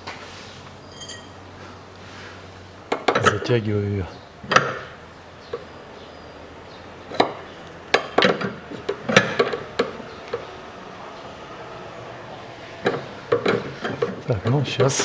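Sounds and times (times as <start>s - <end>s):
metal tool clinking: 0.8s - 1.4s.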